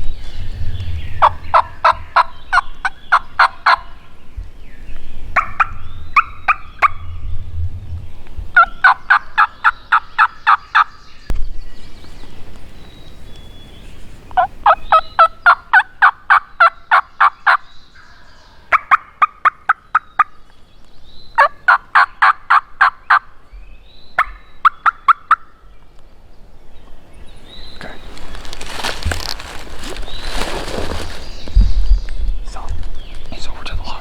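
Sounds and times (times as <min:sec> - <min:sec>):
rustling noise: 0:27.7 - 0:31.9.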